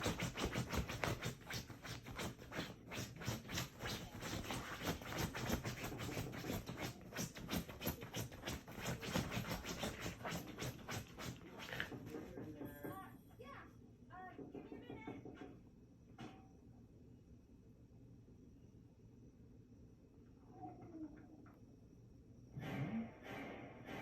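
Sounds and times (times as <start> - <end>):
dog scratching: 0.0 - 12.7.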